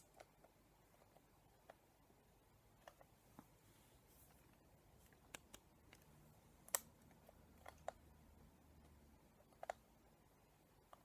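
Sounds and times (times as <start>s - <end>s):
faint plastic clicks and taps: 8.8s - 9.9s.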